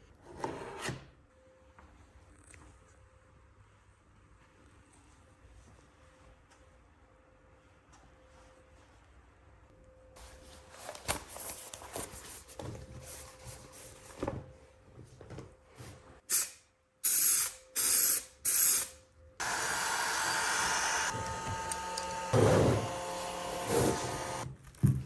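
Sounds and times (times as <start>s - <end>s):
steady whirring: 19.4s - 24.4s.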